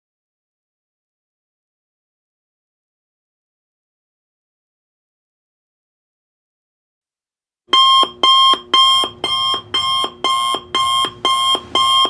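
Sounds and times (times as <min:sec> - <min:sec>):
timer alarm beeping: 0:07.7 - 0:12.0.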